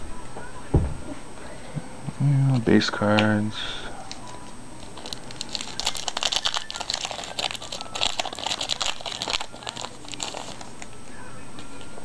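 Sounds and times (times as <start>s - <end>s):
foil wrapper crinkling and tearing: 4.8s - 10.9s.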